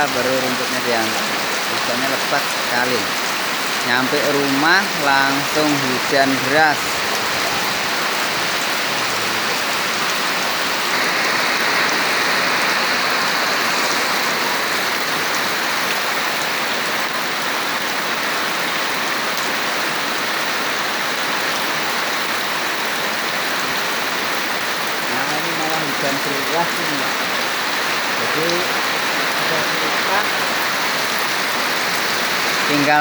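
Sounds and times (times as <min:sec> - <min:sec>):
heavy rain pouring: 0:00.0 - 0:33.0.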